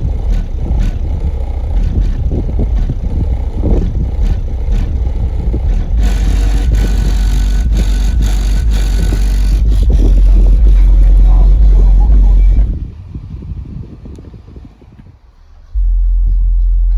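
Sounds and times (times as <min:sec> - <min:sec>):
deep bass music from subwoofer: 0:00.0 - 0:14.2, 0:15.5 - 0:16.9.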